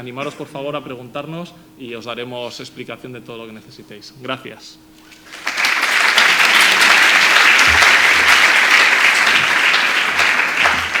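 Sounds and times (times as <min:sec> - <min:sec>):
audience applauding: 0:05.2 - 0:11.0.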